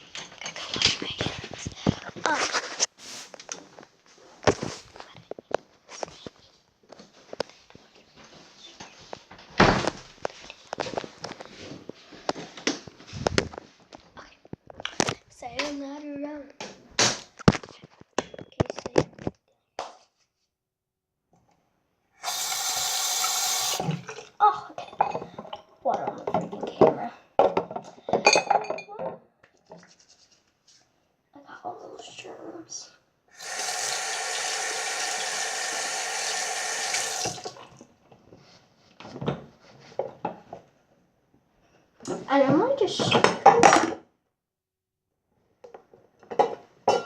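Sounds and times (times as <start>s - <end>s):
rustling: 0.5s - 9.3s
tap water running into sink: 22.2s - 24.2s, 33.4s - 37.8s.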